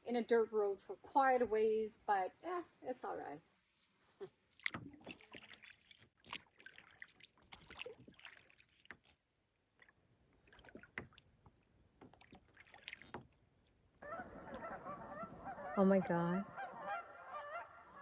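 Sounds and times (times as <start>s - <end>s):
paddle splashing in water: 4.6s - 11.4s, 12.0s - 13.4s
geese honking: 14.0s - 18.0s.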